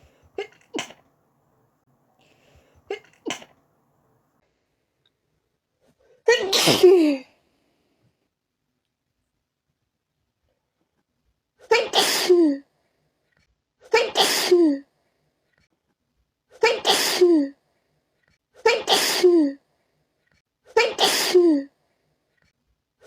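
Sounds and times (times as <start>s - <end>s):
person sneezing: 0.0s - 1.0s, 2.8s - 3.5s, 6.3s - 7.3s, 11.6s - 12.6s, 13.8s - 14.8s, 16.6s - 17.5s, 18.6s - 19.6s, 20.7s - 21.7s.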